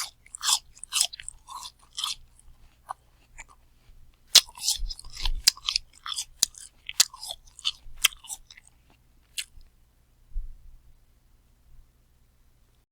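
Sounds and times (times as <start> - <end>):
person chewing crunchy apple: 0.0 - 9.7.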